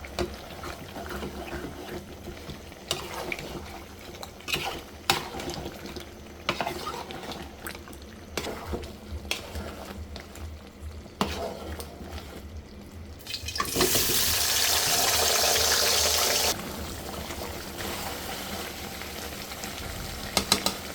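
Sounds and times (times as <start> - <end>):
spatula scraping a pot: 0.2 - 10.4, 11.1 - 12.5
food sizzling: 13.2 - 20.9.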